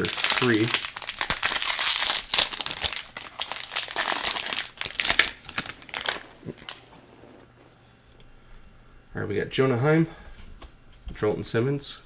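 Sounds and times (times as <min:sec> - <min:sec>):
plastic wrapper crinkling: 0:00.0 - 0:07.7.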